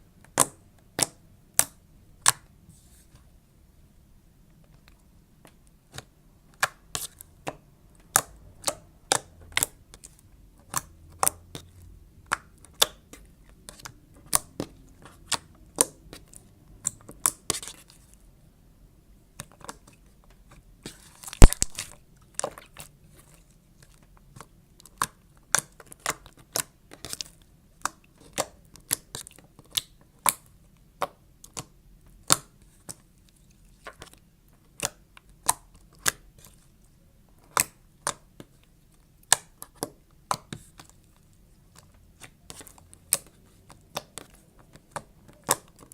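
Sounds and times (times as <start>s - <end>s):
slime squished by hand: 21.2s - 22.8s.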